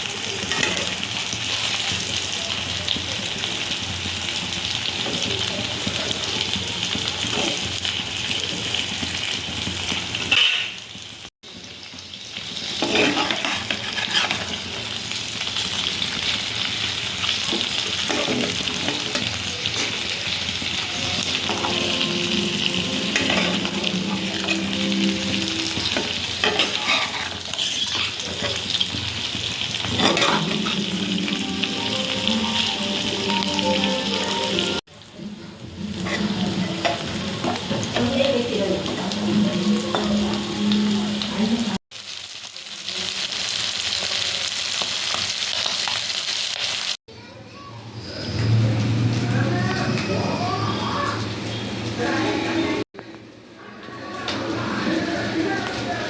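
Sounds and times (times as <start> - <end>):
curry sizzling in a pan: 0.0 - 56.0
spoon scraping a pan: 12.7 - 14.7, 17.4 - 20.4, 21.2 - 31.2, 36.0 - 38.2.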